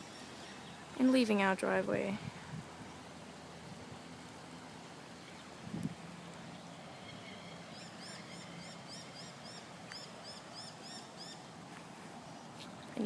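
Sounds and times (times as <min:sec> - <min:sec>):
faint outdoor noise: 0:00.0 - 0:13.0
bird chirping rapidly: 0:07.0 - 0:11.4.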